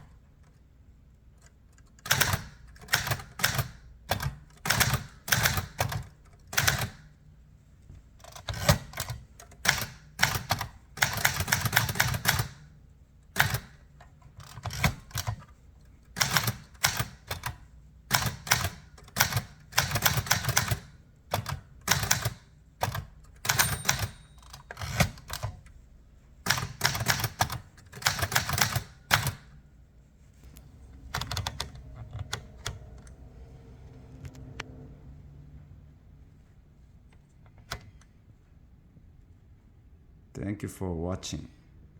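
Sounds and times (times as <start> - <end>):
typewriter key strikes: 2.0 - 7.0, 8.2 - 12.6, 16.2 - 25.6, 26.5 - 29.4.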